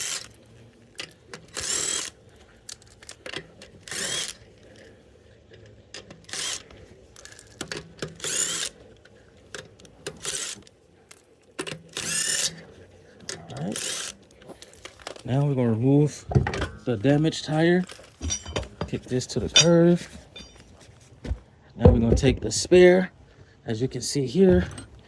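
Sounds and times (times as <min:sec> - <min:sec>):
metallic clinks of nuts: 0:17.8 - 0:20.8.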